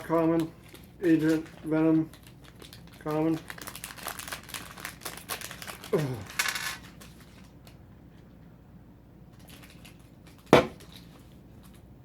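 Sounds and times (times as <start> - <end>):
packs and dice rustling: 0.0 - 7.5.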